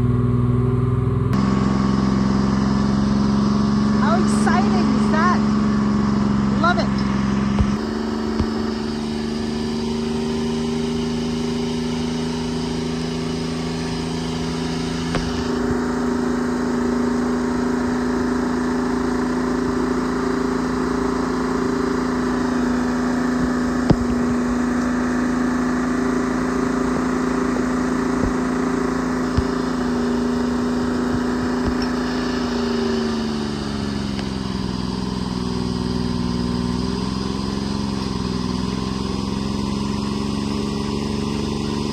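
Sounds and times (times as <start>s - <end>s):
forestry machine engine running: 0.0s - 41.9s.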